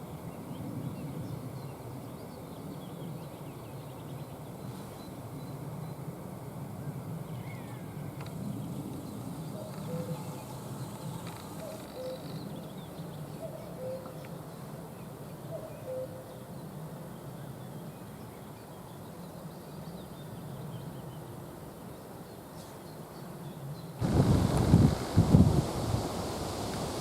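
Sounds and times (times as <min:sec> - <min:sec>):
cuckoo calling: 0:09.6 - 0:10.5, 0:11.5 - 0:12.4, 0:13.4 - 0:14.2, 0:15.5 - 0:16.2
wind buffeting microphone: 0:24.0 - 0:27.0.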